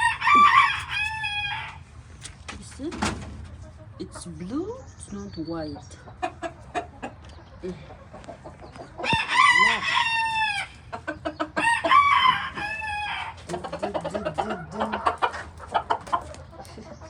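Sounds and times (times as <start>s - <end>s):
rooster crowing: 0.0s - 1.8s, 9.0s - 10.8s, 11.6s - 13.4s
chickens clucking: 0.0s - 17.0s.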